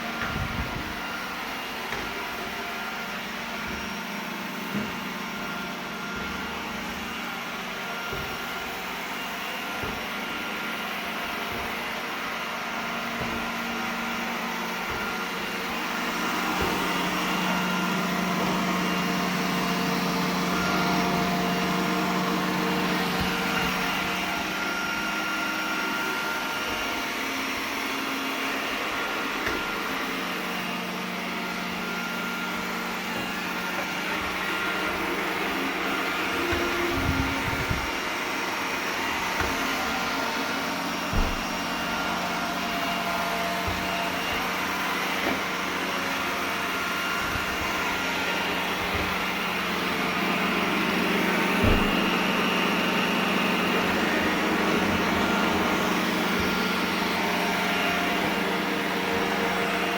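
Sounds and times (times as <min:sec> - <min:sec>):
robot vacuum whirring: 0:00.0 - 0:59.9.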